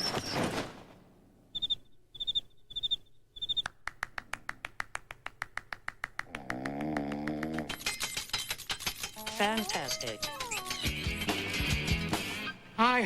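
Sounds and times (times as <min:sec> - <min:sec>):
quick run of clicks: 0:03.5 - 0:11.4.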